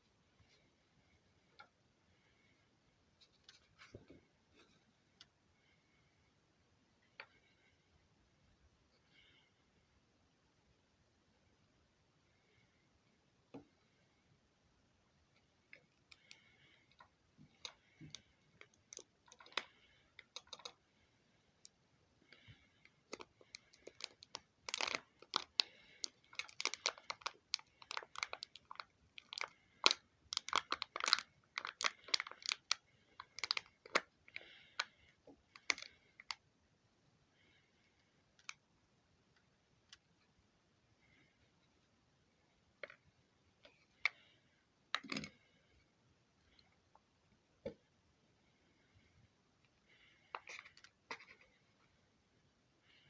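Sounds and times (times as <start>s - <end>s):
plastic clicks and foil crinkles: 16.0s - 20.8s, 23.0s - 34.9s, 35.5s - 36.4s.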